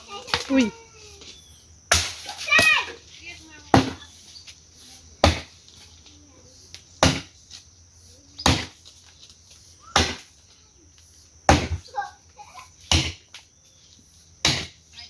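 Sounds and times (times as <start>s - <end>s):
axe chopping wood: 1.9s - 2.7s, 3.8s - 4.0s, 5.2s - 5.6s, 7.0s - 7.4s, 8.4s - 8.8s, 9.9s - 10.3s, 11.5s - 11.8s, 12.9s - 13.3s, 14.4s - 14.8s.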